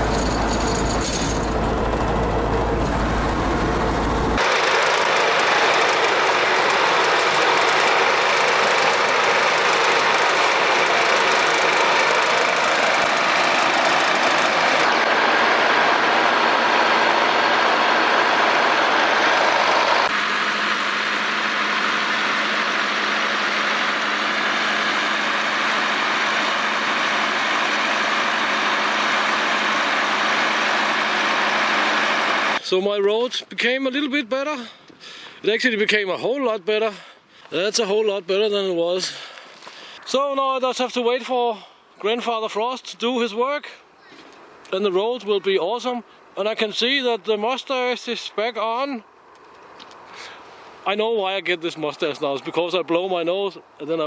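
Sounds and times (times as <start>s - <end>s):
bulldozer diesel engine running: 0.0s - 32.8s.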